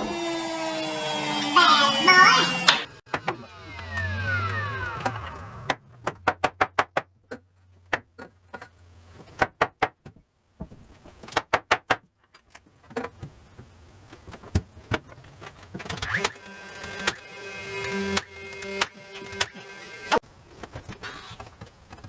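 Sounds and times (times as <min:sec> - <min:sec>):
power tool motor winding down: 0:00.0 - 0:05.9, 0:16.0 - 0:20.2.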